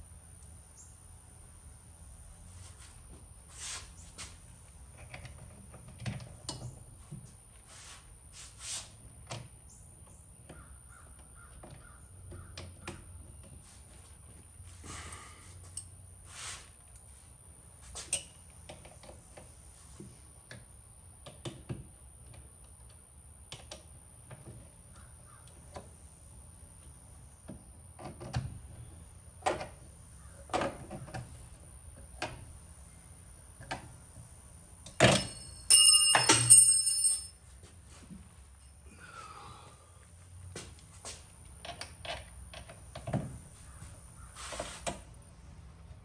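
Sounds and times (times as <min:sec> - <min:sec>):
hand tools clicking and knocking: 0:34.9 - 0:37.3
jingling metal clatter: 0:35.0 - 0:37.4.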